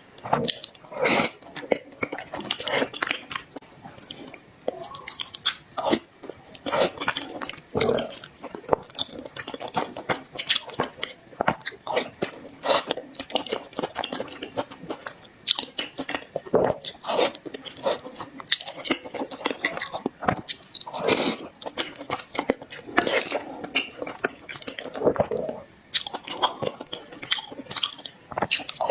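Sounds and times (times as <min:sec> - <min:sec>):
person chewing and biting food: 0:00.2 - 0:28.9.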